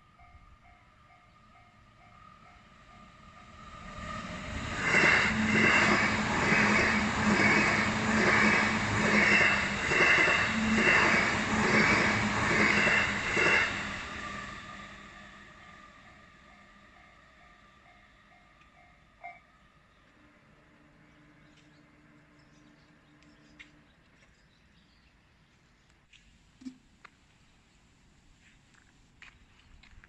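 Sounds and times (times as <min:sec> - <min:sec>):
crossing warning bell: 0:00.0 - 0:20.6
train wheels clattering over rails: 0:04.6 - 0:14.2.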